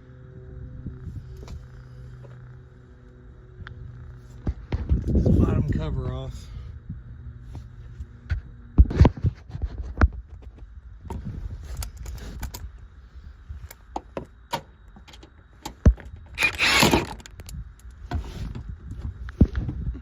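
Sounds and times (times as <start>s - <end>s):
metal tools clinking: 16.4s - 17.2s
rattling scrape: 16.4s - 17.3s.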